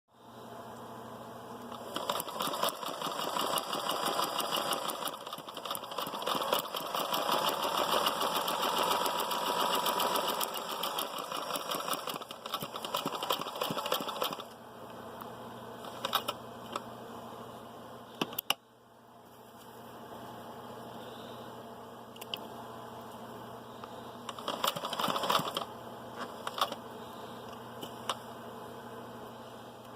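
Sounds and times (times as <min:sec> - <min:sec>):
sewing machine stitching: 0:01.7 - 0:14.5, 0:15.8 - 0:16.4, 0:24.3 - 0:25.7
sewing machine motor whine: 0:01.7 - 0:14.6, 0:24.3 - 0:25.7.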